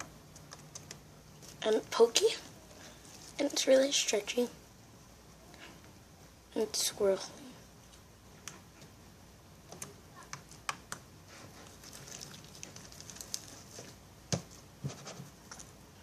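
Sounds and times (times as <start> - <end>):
slime clicking and crackling: 11.7 - 13.8.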